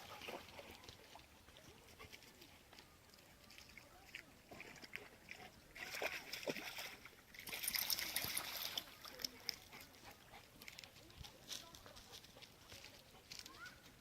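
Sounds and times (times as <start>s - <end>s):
dogs splashing in water: 0.0s - 11.0s.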